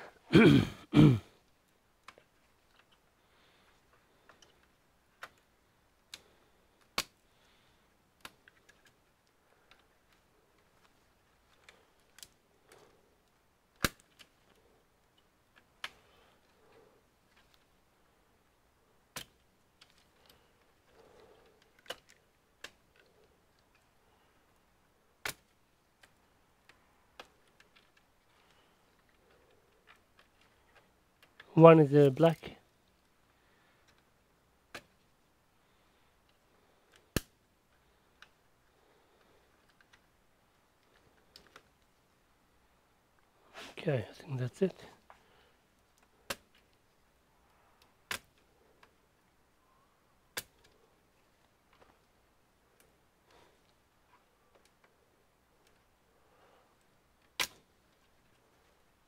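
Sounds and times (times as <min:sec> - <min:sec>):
sharp plastic clicks: 0:08.2 - 0:16.6, 0:19.1 - 0:23.9, 0:25.2 - 0:31.5, 0:36.9 - 0:37.4, 0:46.0 - 0:46.9, 0:47.8 - 0:49.0, 0:50.3 - 0:50.8, 0:57.2 - 0:58.5
faint clicks of computer parts: 0:19.1 - 0:23.9.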